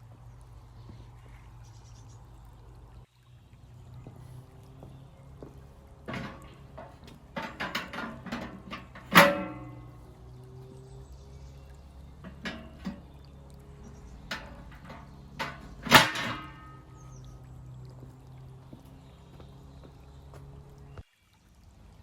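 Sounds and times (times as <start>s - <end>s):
metallic clanks and knocks: 4.8s - 10.7s, 11.8s - 19.0s.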